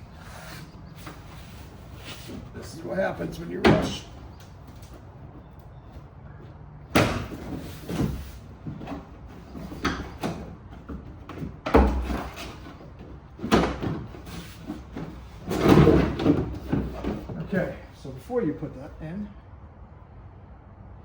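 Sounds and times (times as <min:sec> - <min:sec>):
plastic liner knocking and scraping: 0:06.9 - 0:17.7.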